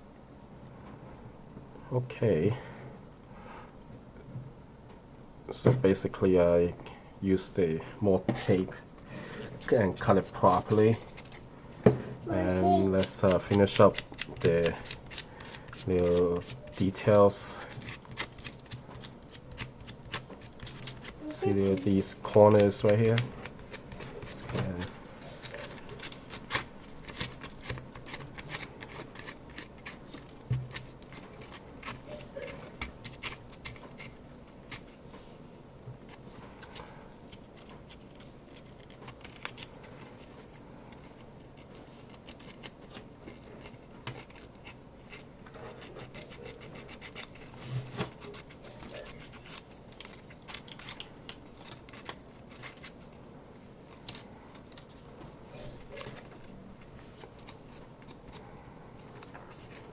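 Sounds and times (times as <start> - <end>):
dry scratching on plastic keycap: 37.3 - 53.1.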